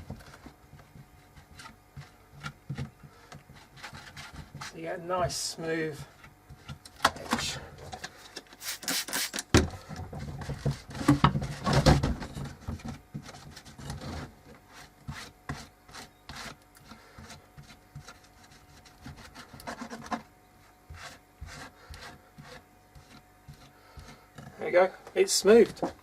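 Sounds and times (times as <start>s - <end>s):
epoxy scraping on wood: 8.4s - 9.4s, 13.2s - 26.0s.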